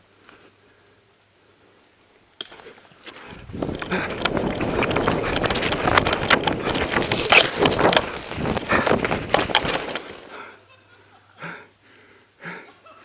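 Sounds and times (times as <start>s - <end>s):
rustling and sharp knocks: 2.4s - 10.3s
wind buffeting microphone: 3.3s - 10.3s.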